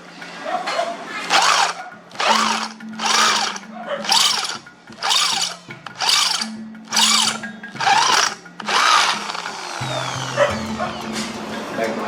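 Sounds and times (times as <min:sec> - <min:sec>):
tool cutting steel with squeal: 0:01.3 - 0:11.3.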